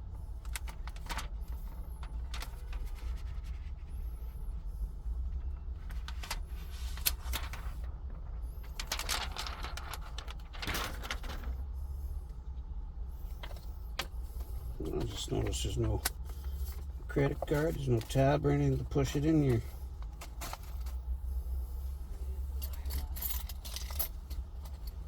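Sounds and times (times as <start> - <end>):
low rumble in cab: 0.0 - 25.0
scraping and rustling: 5.8 - 7.9, 8.6 - 11.6.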